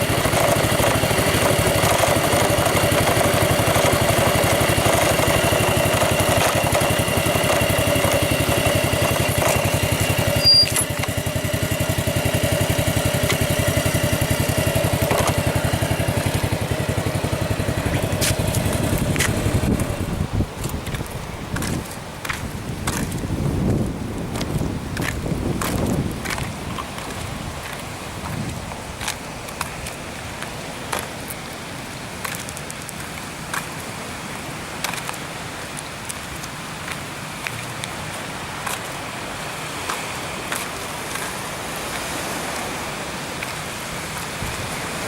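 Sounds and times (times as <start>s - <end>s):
motorcycle engine running: 0.0s - 29.6s.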